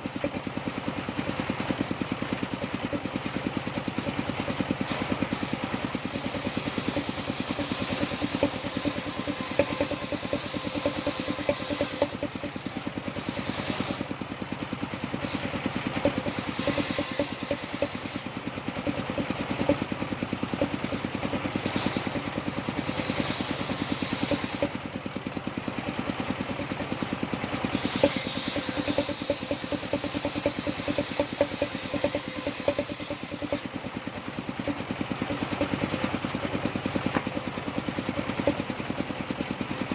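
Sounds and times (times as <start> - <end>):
sawmill engine running: 0.0 - 39.9
saw hissing: 6.3 - 14.1, 16.1 - 18.3, 21.6 - 24.7, 27.7 - 33.7.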